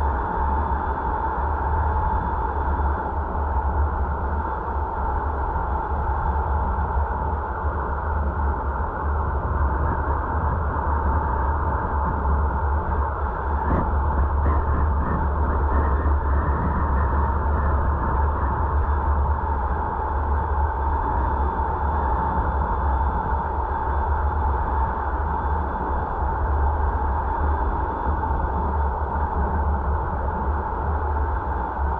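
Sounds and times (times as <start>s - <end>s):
car road and wind noise: 7.2s - 31.9s.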